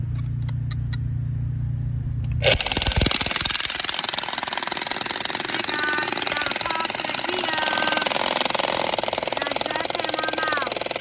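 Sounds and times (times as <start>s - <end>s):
low engine hum: 0.0s - 3.1s
jackhammer hammering: 2.4s - 11.0s.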